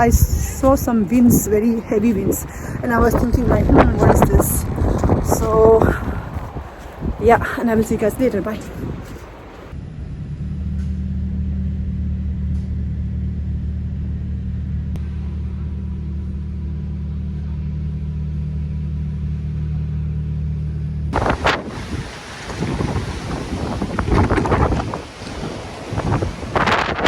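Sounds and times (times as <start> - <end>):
wind on microphone: 0.0 - 10.2, 21.1 - 27.0
vehicle engine hum: 0.0 - 27.0.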